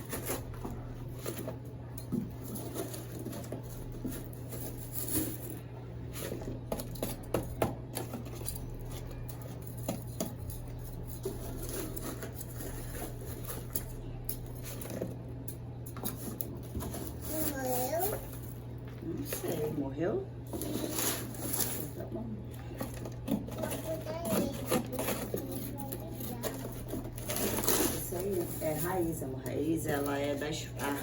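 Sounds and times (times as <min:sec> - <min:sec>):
steady low hum: 0:00.0 - 0:31.0.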